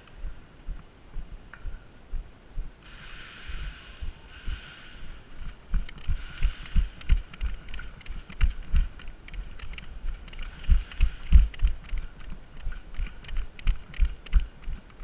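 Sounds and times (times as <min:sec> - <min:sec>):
footsteps dull thumps: 0:05.4 - 0:14.8
light sharp clicks: 0:05.8 - 0:15.0.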